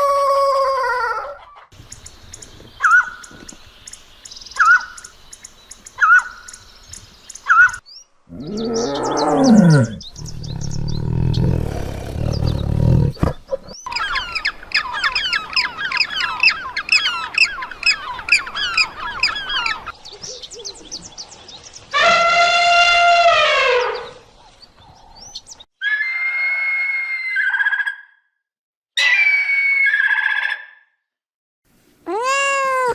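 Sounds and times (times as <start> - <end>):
rapid bird chirping: 1.8 - 21.6
long evenly pitched animal call: 7.5 - 13.0, 22.0 - 24.2, 25.8 - 28.2, 29.0 - 30.8, 32.1 - 32.9
animal low roar: 8.3 - 13.8
short high-pitched animal call: 32.1 - 32.9.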